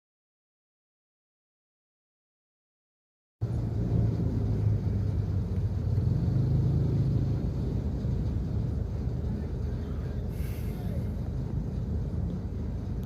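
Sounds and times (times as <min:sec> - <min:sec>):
road traffic rumble: 0:03.4 - 0:13.0.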